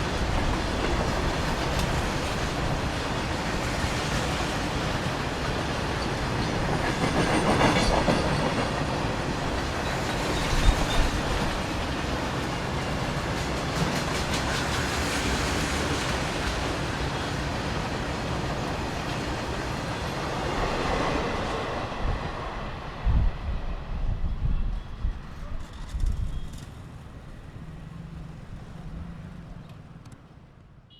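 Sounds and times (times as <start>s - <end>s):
train wheels clattering over rail joints: 0.2s - 16.7s.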